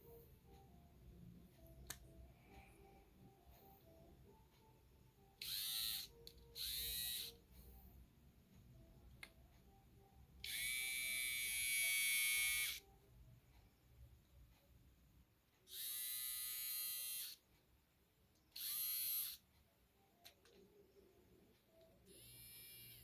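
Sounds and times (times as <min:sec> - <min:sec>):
hair trimmer motor buzzing: 0:10.5 - 0:12.8.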